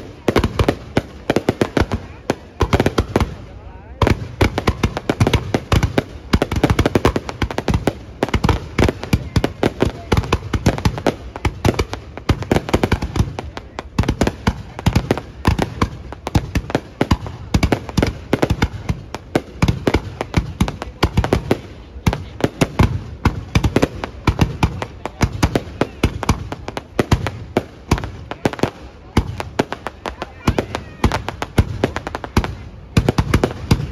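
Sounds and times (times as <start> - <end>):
fireworks bangs and booms: 0.0 - 33.9.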